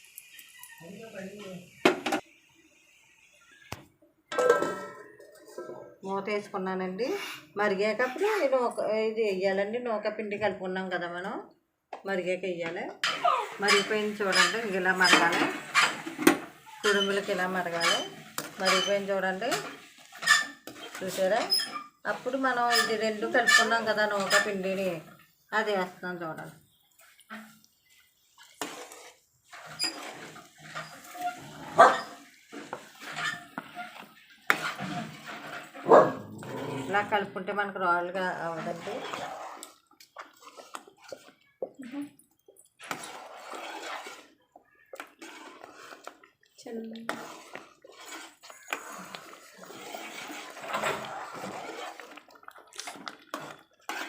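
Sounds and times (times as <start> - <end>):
spoon scraping in a pot: 13.0 - 54.0
dog barking: 31.8 - 32.1, 35.9 - 36.2.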